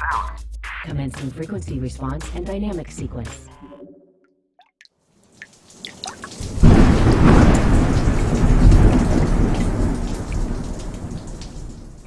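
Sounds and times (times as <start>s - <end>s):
rain drops: 5.2s - 12.0s
steady rain: 5.2s - 12.0s
rolling thunder rumble: 6.4s - 12.0s.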